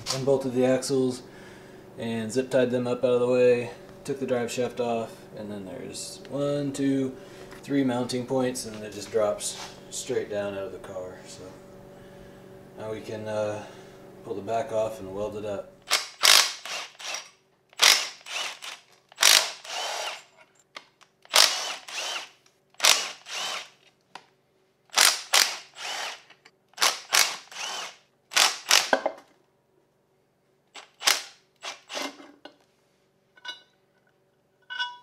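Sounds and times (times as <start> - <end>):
power tool bursts: 15.9 - 20.3, 21.3 - 23.8, 24.9 - 29.0, 30.8 - 32.2.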